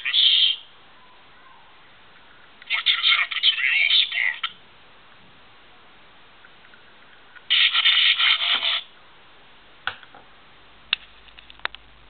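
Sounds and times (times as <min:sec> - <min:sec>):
toy speaker electronic sound effect: 0:00.0 - 0:00.6, 0:02.6 - 0:04.6, 0:07.5 - 0:08.9.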